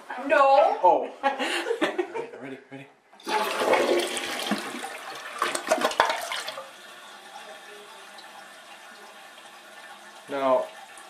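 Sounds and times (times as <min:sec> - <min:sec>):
toilet flushing: 0:03.2 - 0:11.0
toilet tank refilling hiss: 0:03.2 - 0:11.0.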